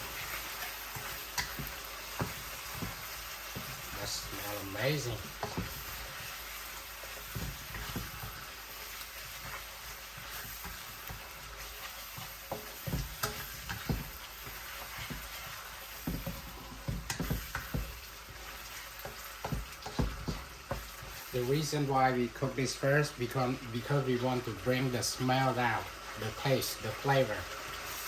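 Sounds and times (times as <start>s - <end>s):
spatula scraping a pan: 0.0s - 21.5s
paste sizzling in hot oil: 0.0s - 28.0s
spatula knocking on pan: 0.9s - 6.3s, 7.2s - 8.4s, 12.1s - 21.2s.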